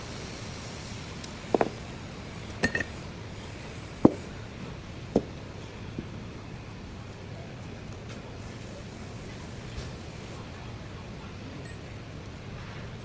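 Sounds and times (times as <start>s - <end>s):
metal objects clinking: 1.2s - 3.0s.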